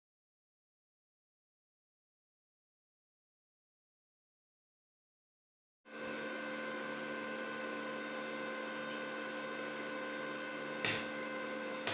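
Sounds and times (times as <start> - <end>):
machine hum: 5.9 - 11.9.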